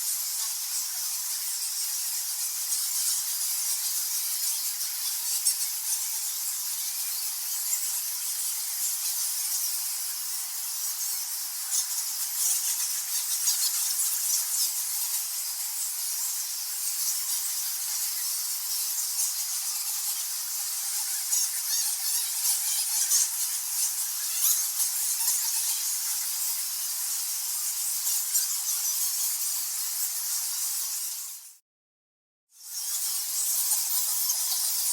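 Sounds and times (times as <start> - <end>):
bats squeaking: 17.1 - 26.8.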